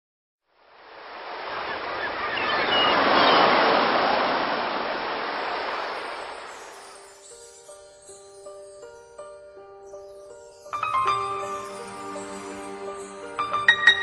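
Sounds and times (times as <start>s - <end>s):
sea waves breaking on shore: 0.6s - 7.0s.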